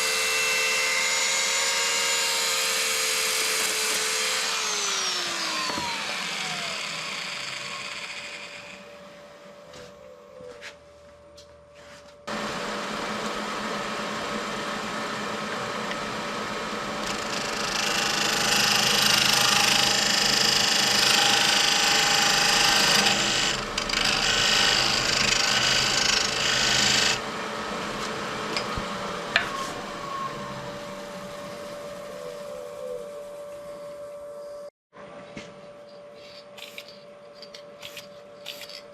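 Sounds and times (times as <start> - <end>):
wood lathe running: 0.0 - 9.0, 12.3 - 32.7
tool scraping spinning wood: 13.1 - 30.5.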